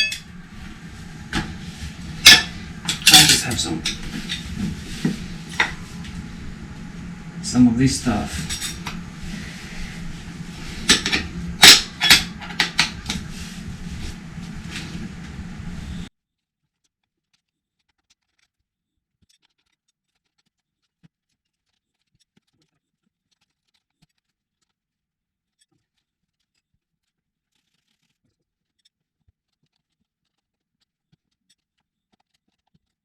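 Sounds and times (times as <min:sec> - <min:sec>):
faint clicks and scratches: 0:16.6 - 0:33.0.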